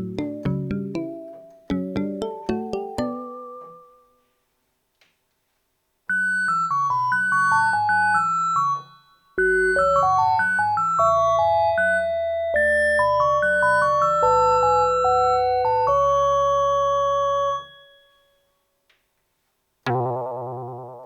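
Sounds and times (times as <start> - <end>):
synthesizer melody over bass line: 0.0 - 3.9.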